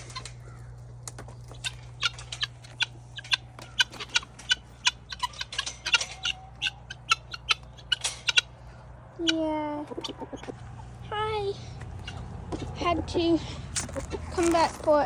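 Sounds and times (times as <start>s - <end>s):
chickens clucking and chirping: 0.0s - 14.6s
steady low hum: 0.0s - 15.0s.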